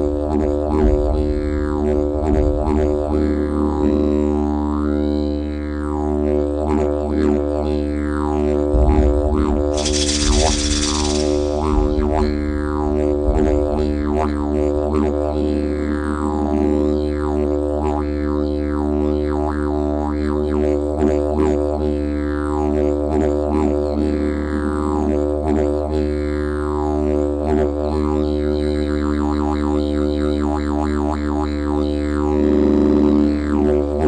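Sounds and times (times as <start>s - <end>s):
music with sweeping low drone: 8.7s - 17.4s.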